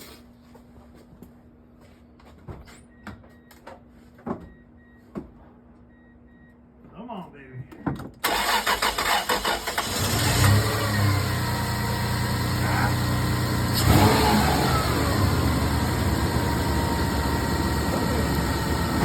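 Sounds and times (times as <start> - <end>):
car engine running: 9.8 - 19.0.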